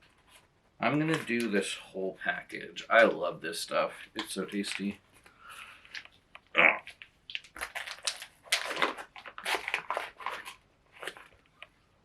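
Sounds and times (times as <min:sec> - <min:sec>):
plastic wrapping crinkling: 0:04.3 - 0:11.8.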